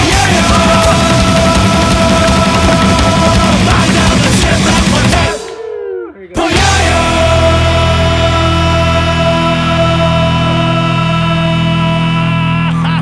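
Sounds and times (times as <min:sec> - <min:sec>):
rock music with distorted guitar: 0:00.0 - 0:13.0
sliding effect tones: 0:00.3 - 0:07.3.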